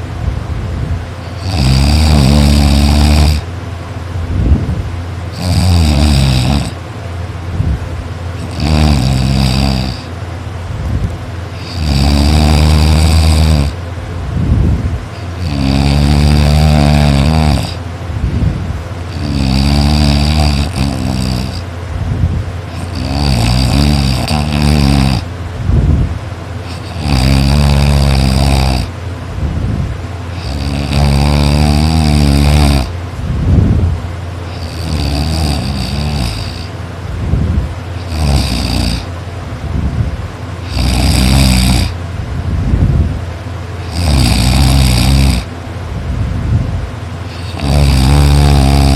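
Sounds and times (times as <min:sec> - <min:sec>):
person snoring loudly: 0:01.2 - 0:03.5, 0:05.3 - 0:06.8, 0:08.4 - 0:10.1, 0:11.6 - 0:13.8, 0:15.1 - 0:17.8, 0:19.1 - 0:21.7, 0:22.7 - 0:25.8, 0:26.6 - 0:29.0, 0:30.3 - 0:33.8, 0:34.4 - 0:36.7, 0:37.9 - 0:39.1, 0:40.6 - 0:42.0, 0:43.8 - 0:45.5, 0:47.3 - 0:48.9.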